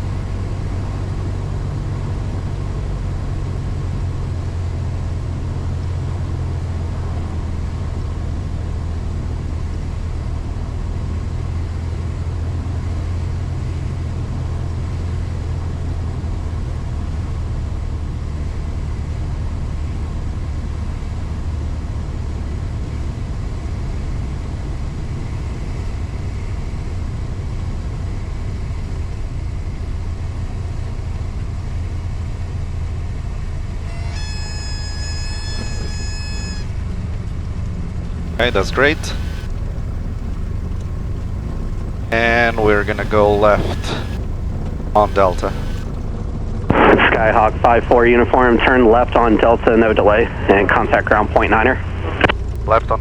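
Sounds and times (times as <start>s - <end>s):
airflow noise: 38.3s - 46.1s
propeller engine droning: 38.3s - 46.4s.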